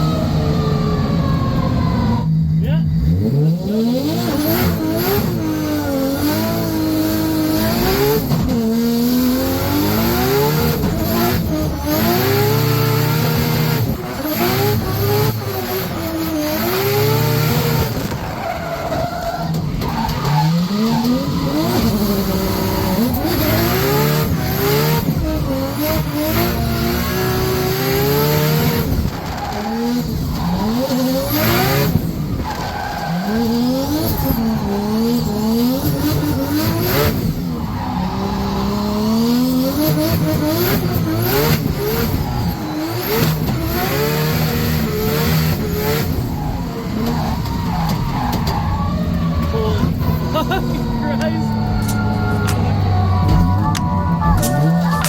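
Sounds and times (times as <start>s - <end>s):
car engine revving hard: 0.0s - 53.7s
tyres skidding and squealing: 0.0s - 55.0s.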